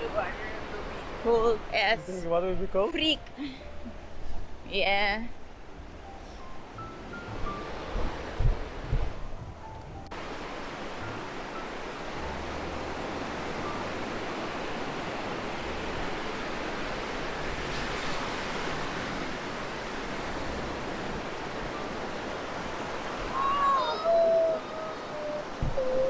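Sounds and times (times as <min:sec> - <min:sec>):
wind rumbling on microphone: 0:05.3 - 0:11.2, 0:12.2 - 0:26.0
sea waves breaking on shore: 0:10.2 - 0:26.0.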